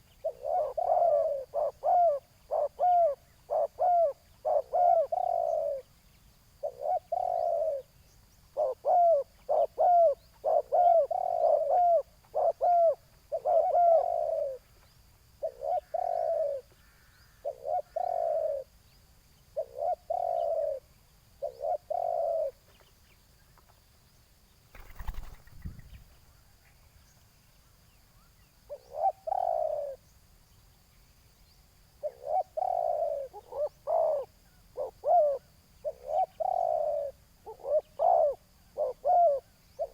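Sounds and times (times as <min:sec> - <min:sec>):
doves cooing: 0:00.0 - 0:05.9, 0:06.6 - 0:07.9, 0:08.5 - 0:14.6, 0:15.4 - 0:18.7, 0:19.6 - 0:22.6, 0:24.8 - 0:26.1, 0:28.7 - 0:30.0, 0:32.0 - 0:39.9.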